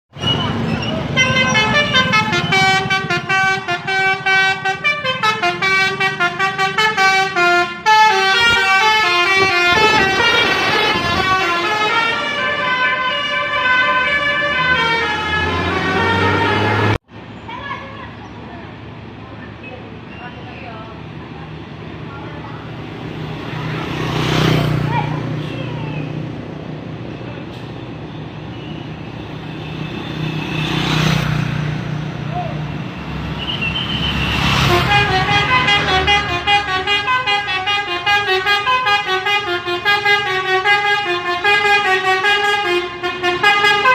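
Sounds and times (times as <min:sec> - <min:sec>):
bus musical horn melody: 0:01.1 - 0:17.0, 0:33.4 - 0:43.9
vehicle passing by: 0:09.3 - 0:17.4, 0:20.0 - 0:37.4.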